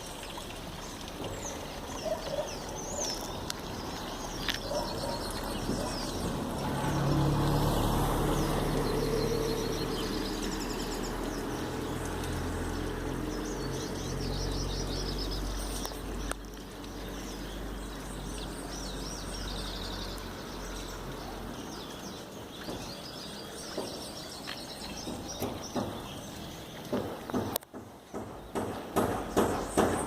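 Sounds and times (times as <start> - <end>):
birds trilling: 1.3 - 12.0
sharp knocks: 25.0 - 26.2, 26.9 - 30.0.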